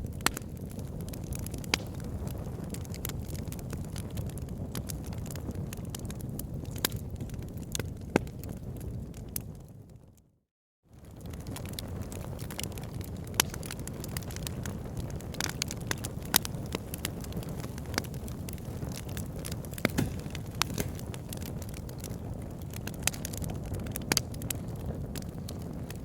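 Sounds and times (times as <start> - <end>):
wood fire crackling: 0.0 - 9.9, 11.0 - 26.0
sharp pops and snaps: 13.4 - 13.7, 18.9 - 22.1.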